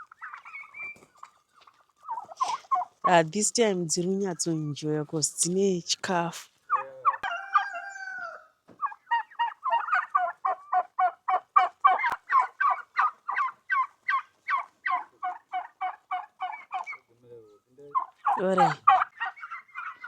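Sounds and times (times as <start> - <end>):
turkey calling rapidly: 0.0 - 3.2, 6.6 - 17.1, 17.8 - 20.0.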